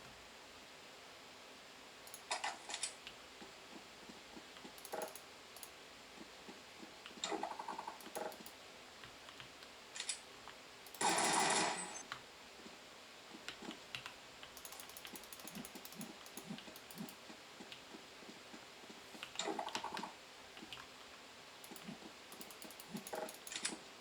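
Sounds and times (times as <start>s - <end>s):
mechanical keyboard typing clacks: 4.6s - 5.7s, 7.5s - 8.6s, 13.5s - 17.8s, 21.7s - 23.7s.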